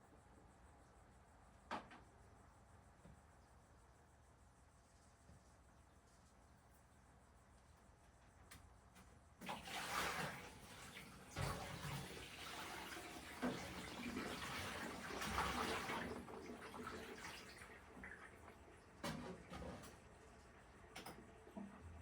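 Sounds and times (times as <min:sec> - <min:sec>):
tap water running into sink: 0:09.4 - 0:18.6.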